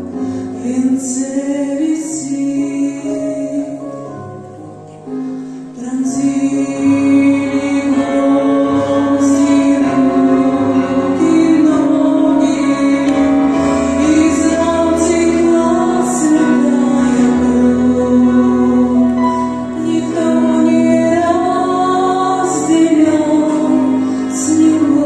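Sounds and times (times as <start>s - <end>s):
woman singing a slow song: 0.6s - 4.1s, 5.8s - 25.0s
instrumental accompaniment: 3.9s - 25.0s.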